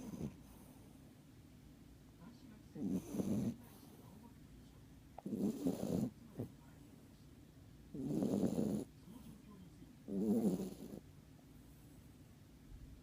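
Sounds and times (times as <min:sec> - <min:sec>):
loud snoring: 0:02.8 - 0:03.6, 0:05.2 - 0:06.1, 0:08.0 - 0:08.9, 0:10.1 - 0:11.0.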